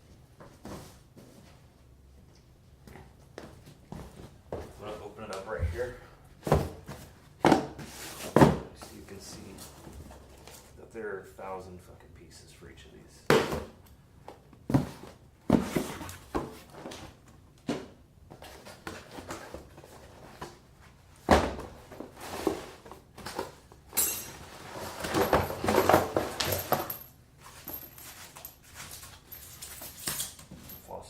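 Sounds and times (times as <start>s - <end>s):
box knocks and thumps: 6.4s - 8.7s, 21.2s - 22.0s.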